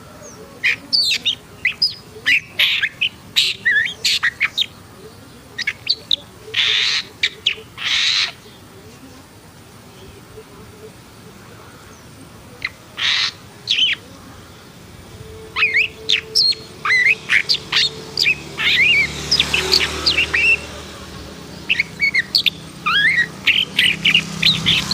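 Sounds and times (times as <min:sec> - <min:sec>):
shrike chirping and squeaking: 0:00.6 - 0:04.9, 0:05.6 - 0:08.7, 0:12.6 - 0:24.9.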